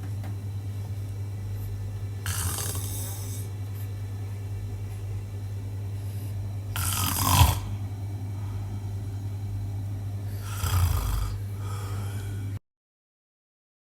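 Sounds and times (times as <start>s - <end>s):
steady low hum: 0.0s - 12.6s
man snoring: 2.2s - 3.6s, 6.7s - 7.9s, 10.3s - 12.6s
soft breaths: 5.9s - 8.9s, 10.2s - 12.6s.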